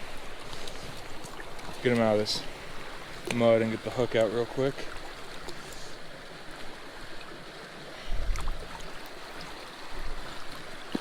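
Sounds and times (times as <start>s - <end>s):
small creek flowing: 0.0s - 11.0s.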